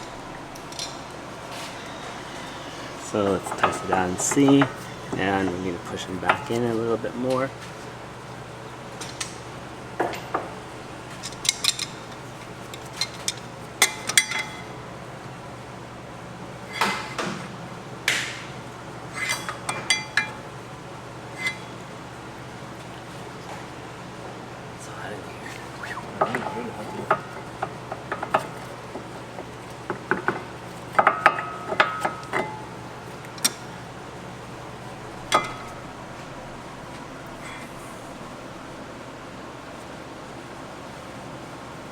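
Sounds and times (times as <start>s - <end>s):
metal tools clinking and tapping: 11.1s - 14.6s.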